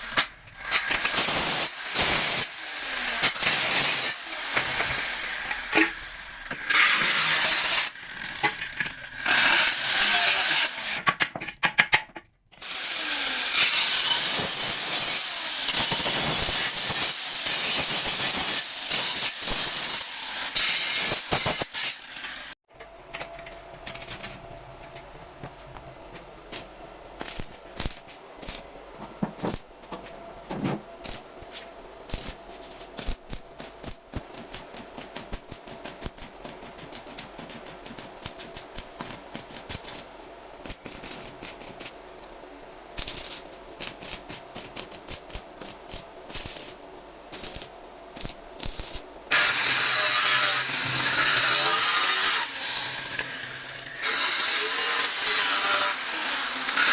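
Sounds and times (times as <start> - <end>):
power tool working steel: 0.0 - 11.0, 12.6 - 22.6, 49.3 - 56.9.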